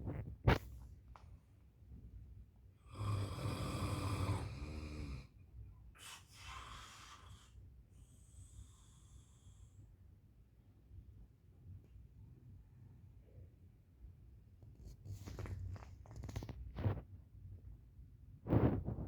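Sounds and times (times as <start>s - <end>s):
person snoring: 2.9s - 5.3s.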